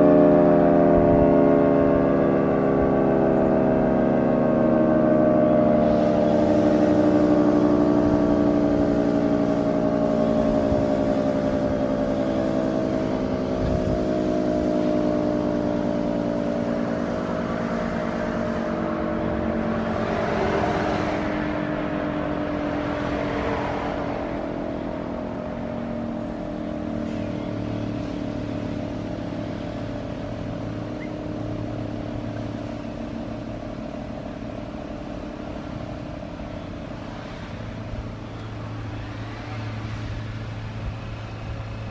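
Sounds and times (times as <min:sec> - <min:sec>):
two-tone siren winding down: 0:00.0 - 0:41.9
rushing noise: 0:12.9 - 0:41.9.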